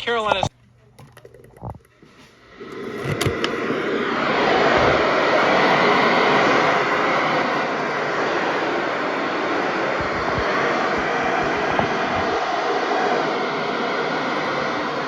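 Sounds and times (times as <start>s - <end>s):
radio static hiss: 1.6s - 15.0s.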